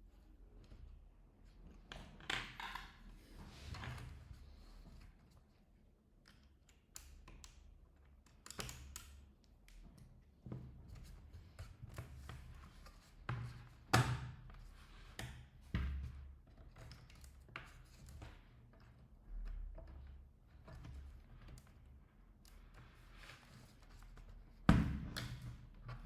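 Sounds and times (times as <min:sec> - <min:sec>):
plastic clips clicking and snapping: 0:08.3 - 0:09.2.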